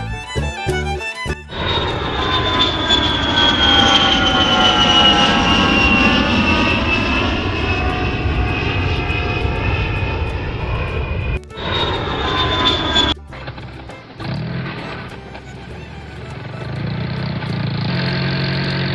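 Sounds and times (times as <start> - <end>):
music: 0.0 - 2.8, 9.8 - 18.9
loud airplane engine drone: 0.7 - 18.9.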